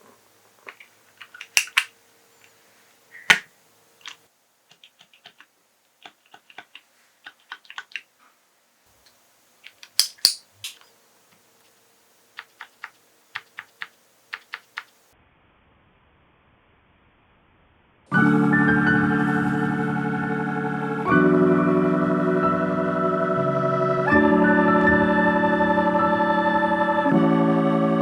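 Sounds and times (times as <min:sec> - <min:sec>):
mechanical keyboard clicking: 0:00.7 - 0:01.9, 0:04.0 - 0:08.0, 0:12.4 - 0:15.0.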